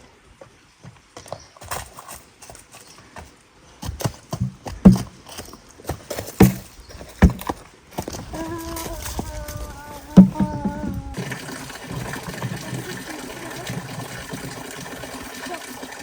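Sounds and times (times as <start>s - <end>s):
hard knocks and clacks: 6.3s - 8.3s.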